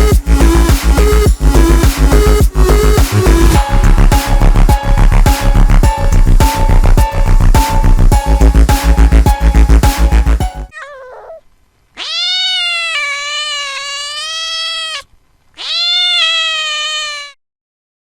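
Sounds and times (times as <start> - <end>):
cat meowing: 10.7 - 17.4.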